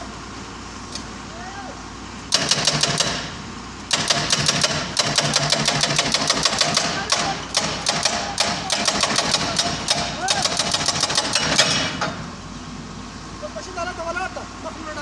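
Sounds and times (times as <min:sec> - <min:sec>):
hydraulic breaker hammering concrete: 0:02.3 - 0:12.3.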